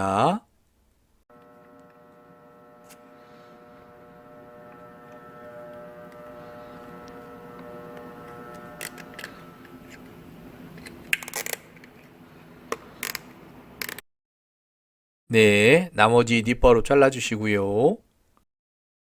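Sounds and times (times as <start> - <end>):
steady humming tone: 1.3 - 14.0.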